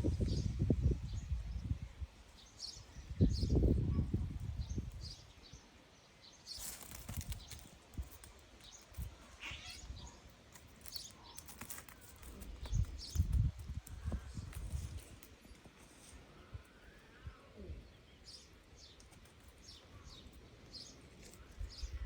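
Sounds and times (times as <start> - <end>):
small songbirds chirping: 0.0 - 22.0
brief rustle: 6.5 - 9.8, 10.5 - 16.2.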